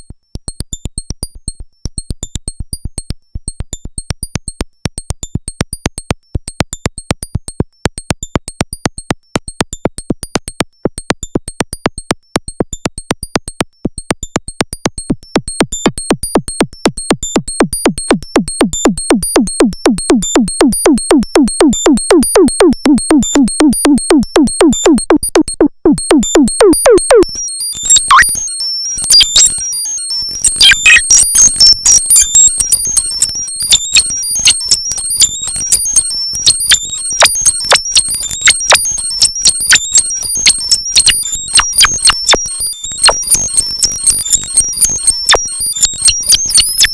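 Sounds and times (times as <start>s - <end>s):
short clicky synth notes: 13.8s - 46.9s
high chirpy bleeps: 15.0s - 46.9s.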